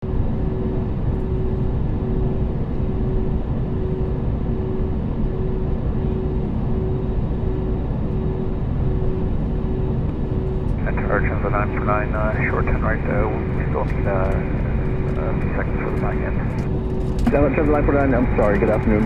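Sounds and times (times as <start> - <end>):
constant hum: 0.0 - 19.0
jet airliner engine rumble: 0.0 - 19.0.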